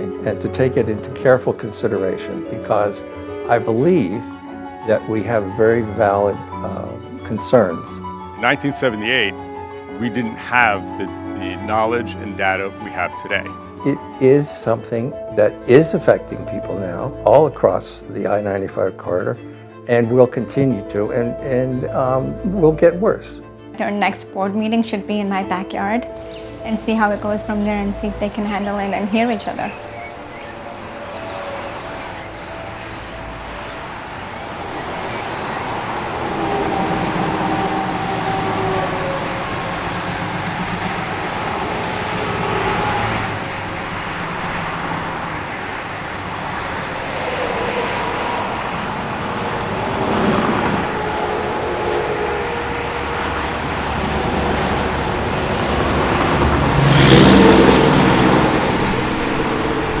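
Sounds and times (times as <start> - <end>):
heavy vehicle passing: 7.8 - 18.3, 24.6 - 60.0
dense highway traffic roar: 25.8 - 60.0.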